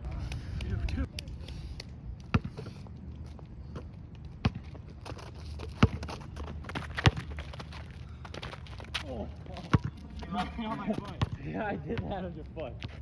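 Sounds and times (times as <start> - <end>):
basketball bouncing on court: 2.3 - 2.6, 4.4 - 4.8, 5.8 - 7.6, 9.6 - 11.4
scuffing footsteps: 3.2 - 11.2.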